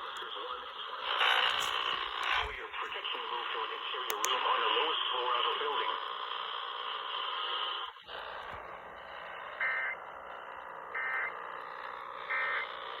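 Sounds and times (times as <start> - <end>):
radio reception hiss: 0.0 - 13.0
buzzy digital data bursts: 4.6 - 13.0.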